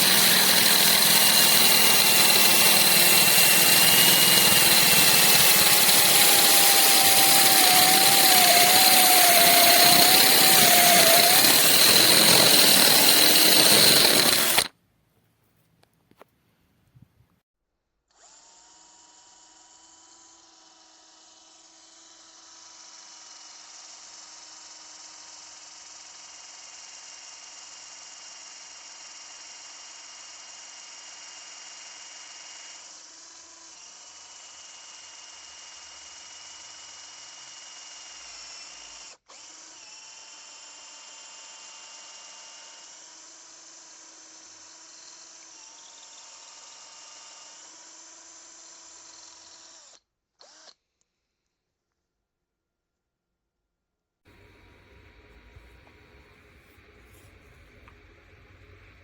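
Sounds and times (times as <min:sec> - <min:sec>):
cordless drill motor whining: 0:00.0 - 0:14.7, 0:18.1 - 0:20.6, 0:41.4 - 0:50.8.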